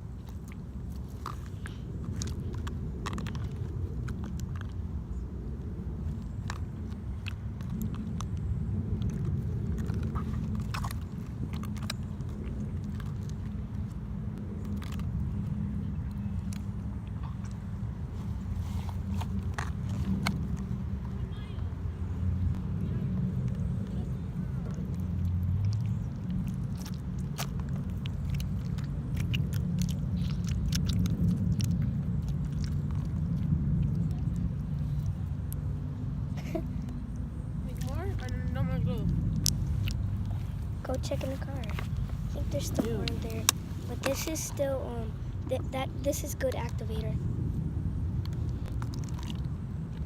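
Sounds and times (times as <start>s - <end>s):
steady low rumble: 0.0s - 50.0s.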